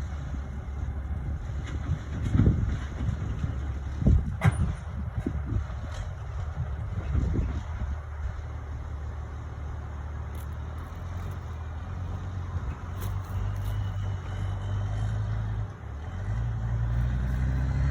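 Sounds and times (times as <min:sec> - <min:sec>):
diesel truck engine drone: 0:00.0 - 0:17.9.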